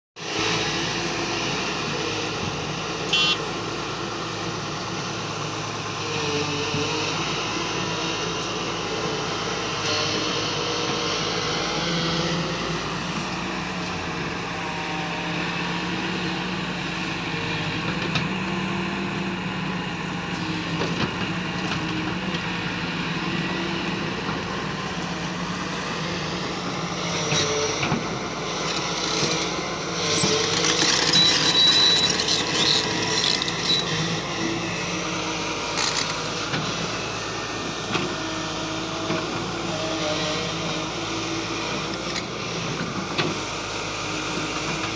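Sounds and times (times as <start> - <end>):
excavator diesel engine running: 0.2 - 44.9.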